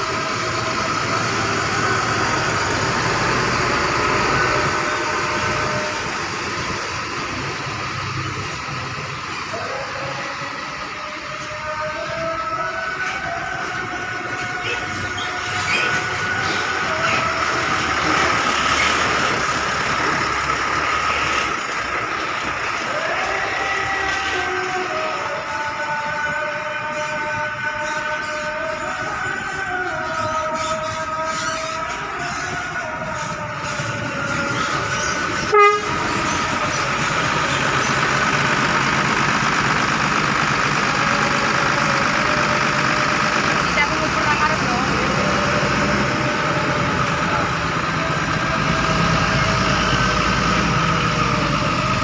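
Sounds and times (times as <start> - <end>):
bus diesel engines running: 0.0 - 52.0
bus horn toot: 34.5 - 36.4.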